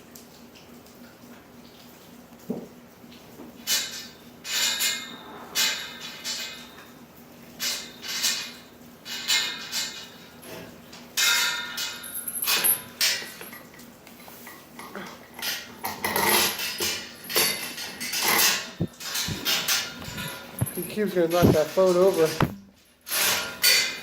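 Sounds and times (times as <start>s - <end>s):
bucket knocking and rattling: 15.8s - 22.7s.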